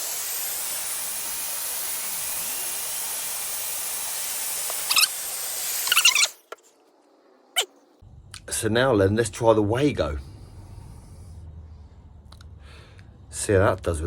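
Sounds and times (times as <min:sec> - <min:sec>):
heat gun blowing: 0:00.0 - 0:06.4
sharp high-pitched sounds: 0:00.0 - 0:06.4.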